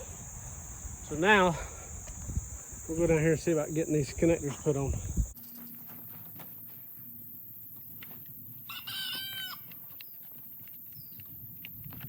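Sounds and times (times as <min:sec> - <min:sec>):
rooster crowing: 0:08.7 - 0:09.7.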